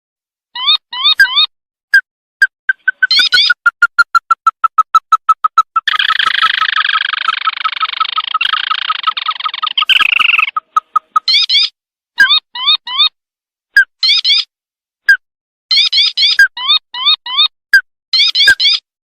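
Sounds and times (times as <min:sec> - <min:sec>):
bird rattling trill: 0:02.7 - 0:11.6
bird rising chirps: 0:02.7 - 0:11.7
bird piping notes: 0:02.7 - 0:13.1.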